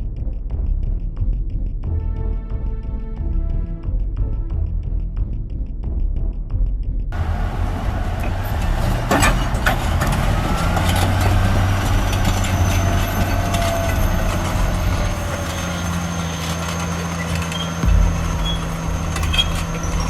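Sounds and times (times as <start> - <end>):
heavy equipment engine running: 7.2 - 20.0.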